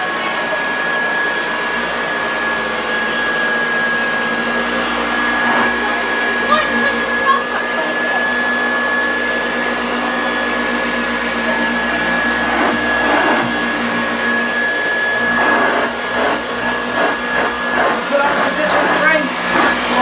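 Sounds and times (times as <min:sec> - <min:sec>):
upright vacuum cleaner running: 0:00.0 - 0:20.0.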